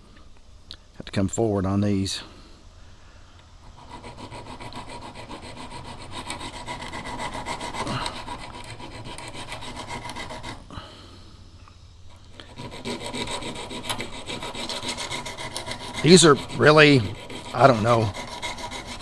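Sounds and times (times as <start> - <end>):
hand file rasping on steel: 3.7 - 10.6, 12.3 - 19.0.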